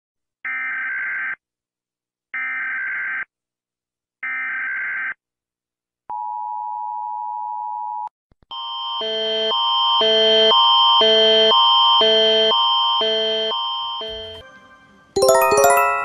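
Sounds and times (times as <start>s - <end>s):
electronic alarm tone: 8.6s - 14.4s
two-tone attention signal: 14.0s - 14.4s.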